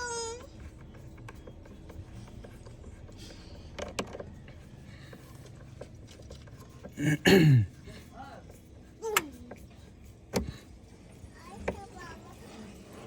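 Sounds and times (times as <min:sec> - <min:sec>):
engine parts clicking and rattling: 0:00.4 - 0:07.0.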